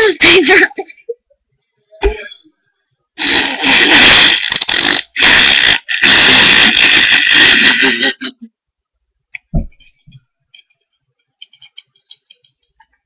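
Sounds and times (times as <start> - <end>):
fake fart noises: 3.2 - 8.4.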